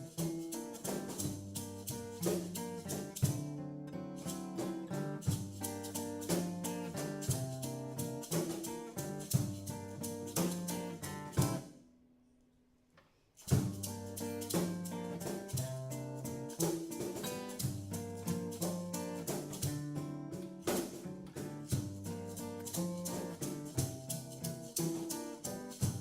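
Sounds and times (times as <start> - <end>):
instrumental music with steady beat: 0.0 - 11.8, 13.4 - 26.0.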